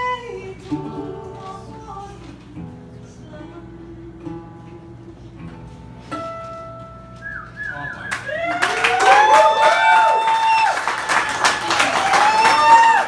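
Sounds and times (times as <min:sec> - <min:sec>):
acoustic guitar music: 0:00.0 - 0:08.4
audience clapping and whistling: 0:07.2 - 0:13.0.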